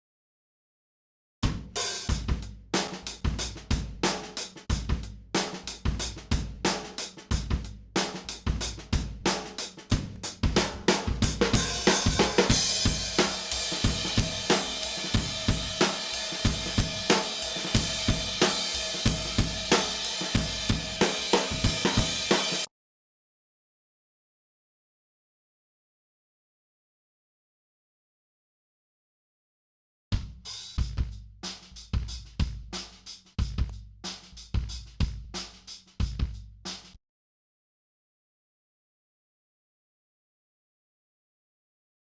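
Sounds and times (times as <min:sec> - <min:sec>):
kick and snare drum groove: 0:01.4 - 0:22.7, 0:30.1 - 0:37.0
cymbal wash: 0:12.5 - 0:22.7.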